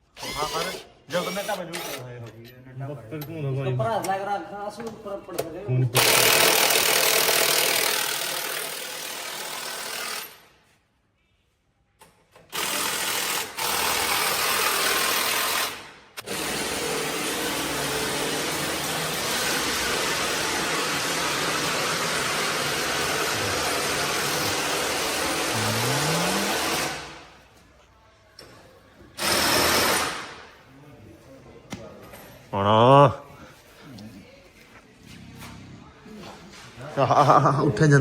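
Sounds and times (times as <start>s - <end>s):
small motor running: 17.4s - 26.9s.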